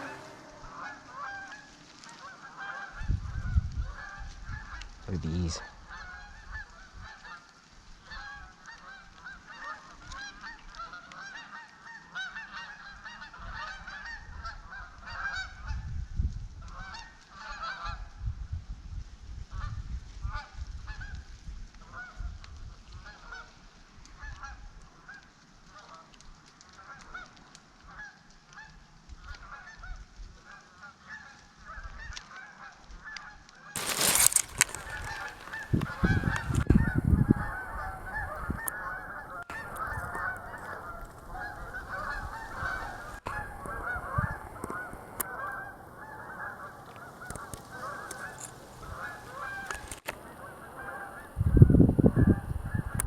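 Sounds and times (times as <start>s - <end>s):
geese honking: 0.0s - 4.8s, 33.8s - 53.0s.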